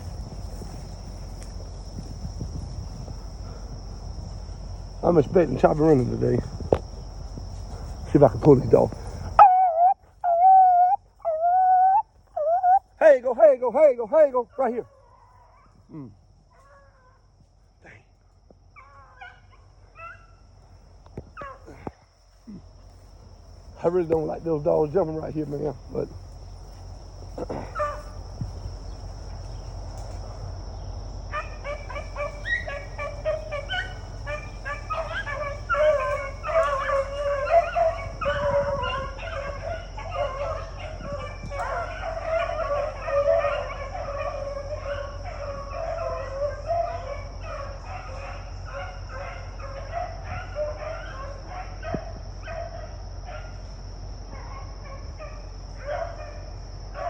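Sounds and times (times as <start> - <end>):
high insect drone: 0.0 - 57.0
dogs baying: 9.0 - 13.6, 14.2 - 17.3, 18.7 - 20.7, 21.3 - 23.2, 26.7 - 28.3, 31.3 - 57.0.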